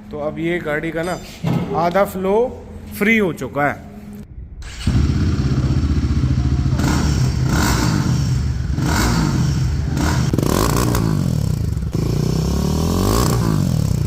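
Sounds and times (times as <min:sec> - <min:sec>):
motorcycle engine revving: 0:04.7 - 0:14.0.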